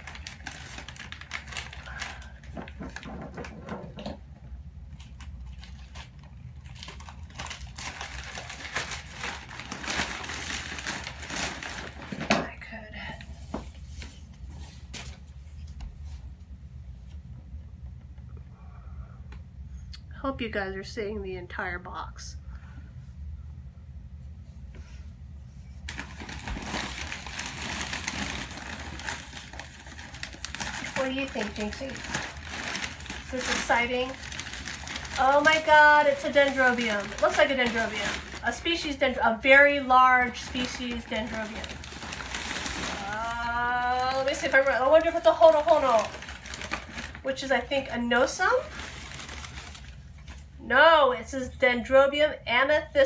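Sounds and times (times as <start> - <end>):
packing material crinkling: 0.0 - 4.0, 4.9 - 12.4, 25.8 - 50.5
steady low hum: 0.0 - 53.0.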